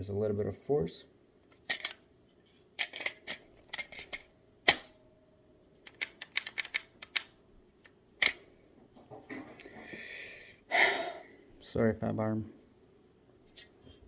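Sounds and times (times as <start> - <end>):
magazine clacking: 2.8 - 5.0, 5.8 - 8.4.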